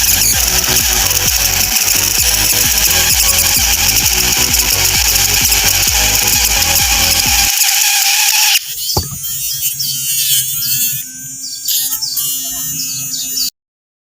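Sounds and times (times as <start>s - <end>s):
small motor whirring: 0.0s - 13.5s
steady and wavering tones: 8.6s - 13.5s.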